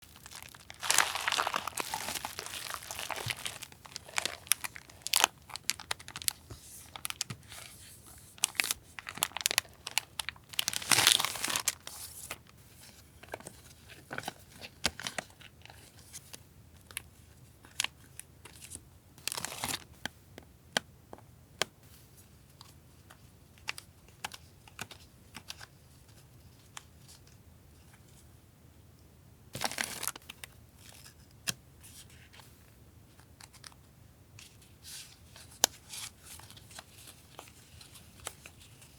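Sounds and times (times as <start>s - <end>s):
packaging crinkling and tearing: 0.0s - 7.4s, 8.4s - 12.5s, 19.2s - 19.8s, 29.6s - 31.1s.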